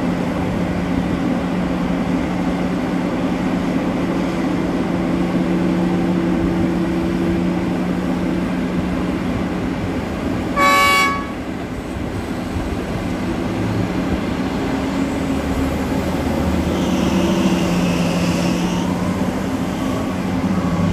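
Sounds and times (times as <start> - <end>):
diesel engines running: 0.0 - 20.9
horn blast: 10.6 - 11.4.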